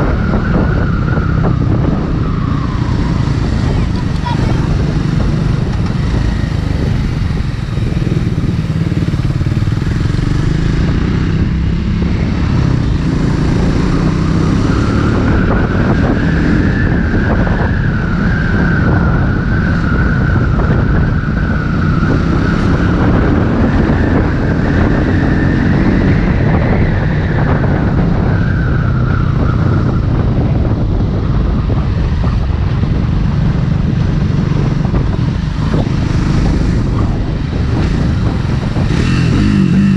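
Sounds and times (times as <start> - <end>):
motorcycle engine running: 0.0 - 17.6, 29.1 - 39.9.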